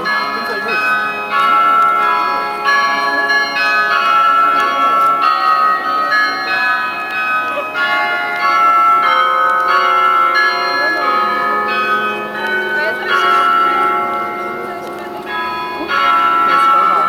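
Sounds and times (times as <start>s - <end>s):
church bells pealing: 0.0s - 17.0s.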